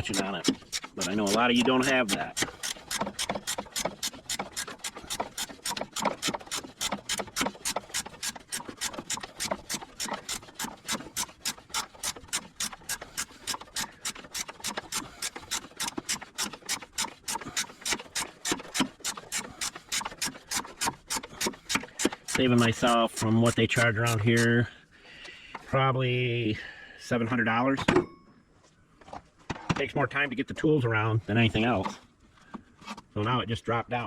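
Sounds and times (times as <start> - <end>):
ratchet wrench clicking: 0.0 - 24.5.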